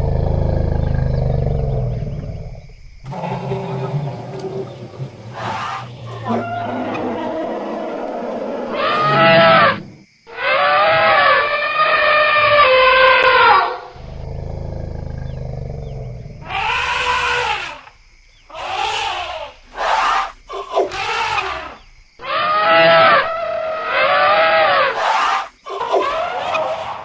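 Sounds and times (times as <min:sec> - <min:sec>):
elephant low rumble: 0:00.0 - 0:10.0, 0:13.8 - 0:17.3
elephants trumpeting: 0:03.1 - 0:17.9, 0:18.5 - 0:27.0.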